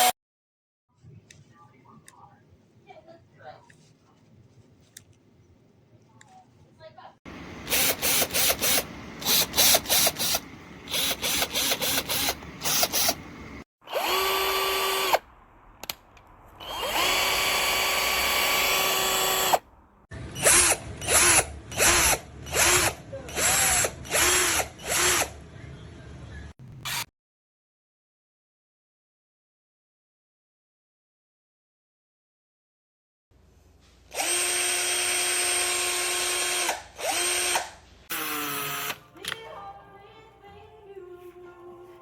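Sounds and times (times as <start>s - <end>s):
cordless drill motor whining: 7.3s - 15.2s, 16.6s - 19.6s, 20.4s - 25.3s, 34.1s - 39.0s.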